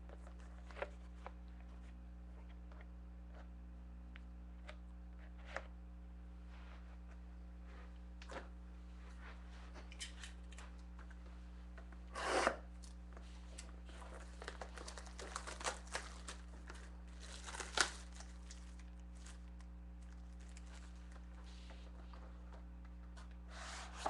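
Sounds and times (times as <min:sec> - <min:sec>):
steady low hum: 0:00.0 - 0:24.0
packaging ripping: 0:14.1 - 0:21.3.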